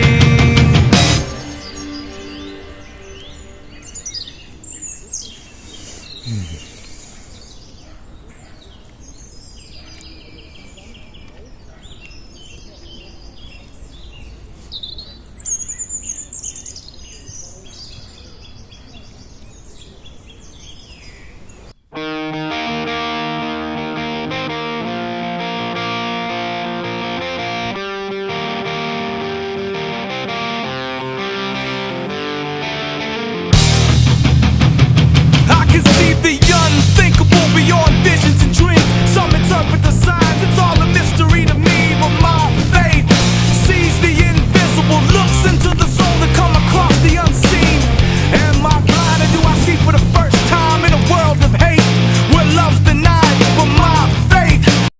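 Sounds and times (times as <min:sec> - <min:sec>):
distorted electric guitar chords: 0:00.0 - 0:03.9, 0:21.9 - 0:54.9
songbirds chirping: 0:01.2 - 0:21.9.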